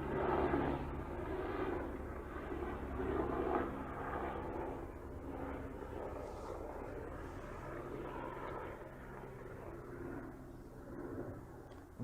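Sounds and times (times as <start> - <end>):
helicopter engine and rotor drone: 0.0 - 12.0.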